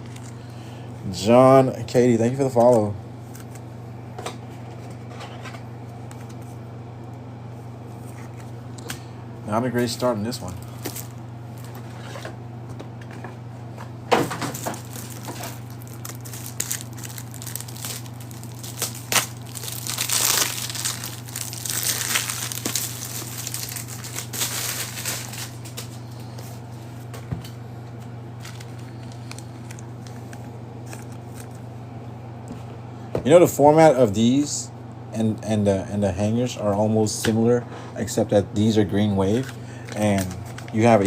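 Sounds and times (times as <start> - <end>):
low hum: 3.0 - 33.0
plastic wrapper crinkling: 10.6 - 11.7, 14.4 - 26.0, 28.4 - 31.6, 39.3 - 40.9.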